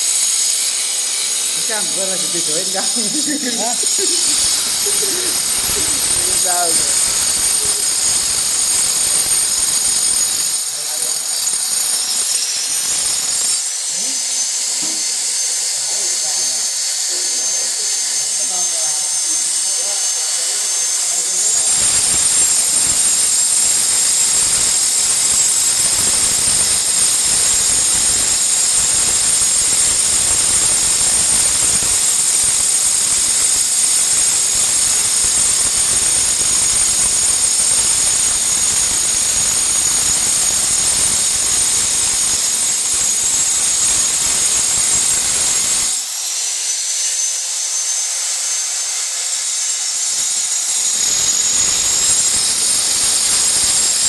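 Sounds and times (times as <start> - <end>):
harsh grinding of glass: 0.0 - 13.8
angle grinder whine: 0.0 - 54.0.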